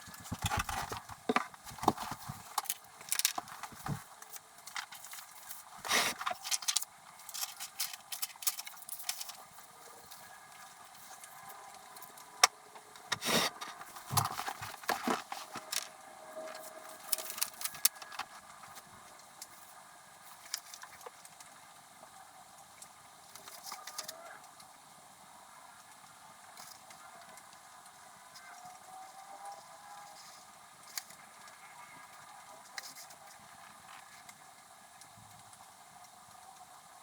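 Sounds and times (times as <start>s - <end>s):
paper rustling: 0.0s - 9.4s, 13.1s - 15.9s, 16.9s - 18.3s.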